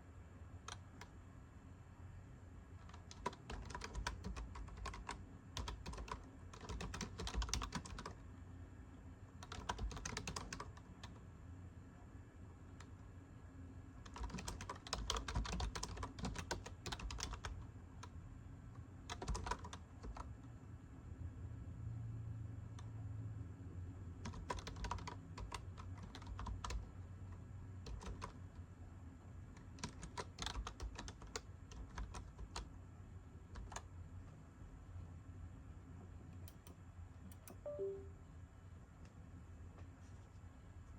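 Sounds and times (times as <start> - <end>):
keyboard typing clicks: 2.8 - 8.2, 9.4 - 11.2, 14.1 - 17.5, 36.4 - 38.1.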